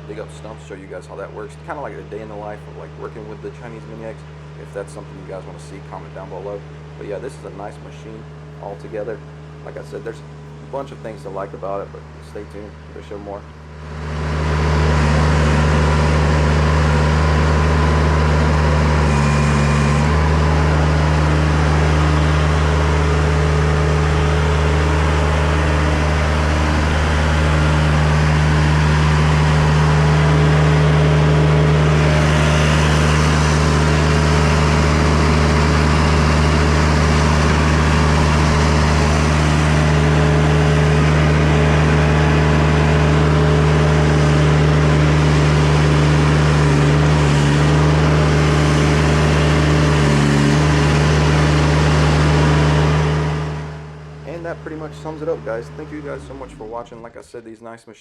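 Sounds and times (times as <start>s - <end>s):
diesel excavator engine running: 0.0s - 57.4s.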